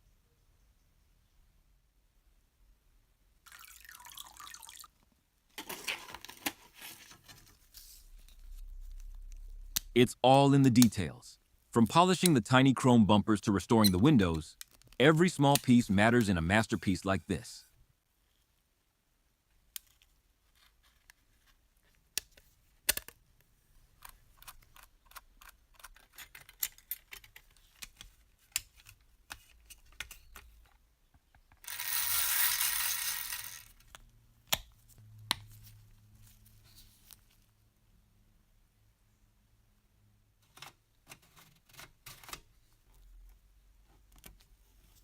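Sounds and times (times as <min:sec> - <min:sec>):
faint low hum: 0:07.3 - 0:12.4
small plastic parts clicking: 0:22.1 - 0:23.2, 0:24.0 - 0:34.8.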